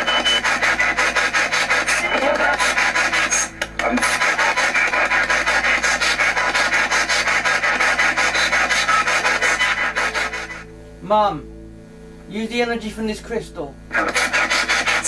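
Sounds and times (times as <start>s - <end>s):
radio static sweeping stations: 0.0s - 10.7s, 13.9s - 15.0s.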